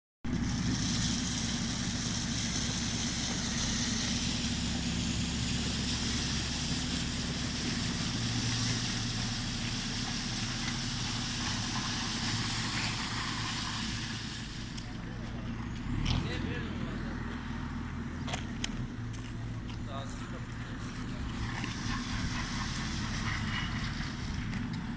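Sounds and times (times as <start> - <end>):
hiss: 0.3 - 14.9, 21.3 - 24.6
heavy machine engine humming: 0.3 - 24.9.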